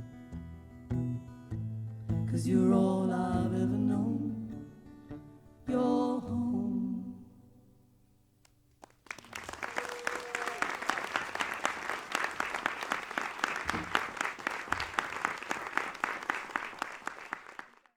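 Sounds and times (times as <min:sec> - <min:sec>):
audience applause: 0:08.8 - 0:17.9.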